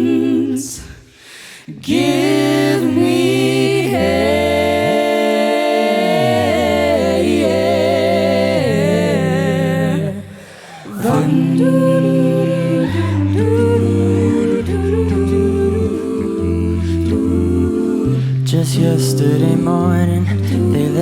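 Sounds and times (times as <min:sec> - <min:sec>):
a cappella group humming chords: 0:00.0 - 0:21.0
low sung bass line: 0:11.1 - 0:21.0.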